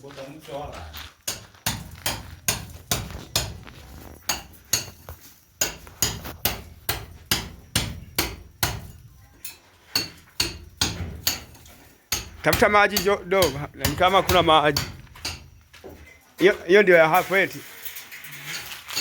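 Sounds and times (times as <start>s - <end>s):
hammer striking: 1.3s - 9.0s, 9.9s - 15.6s.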